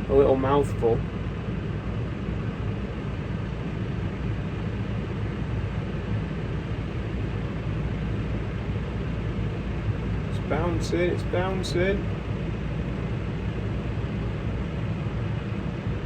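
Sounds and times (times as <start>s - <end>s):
tractor engine running: 6.9s - 16.0s.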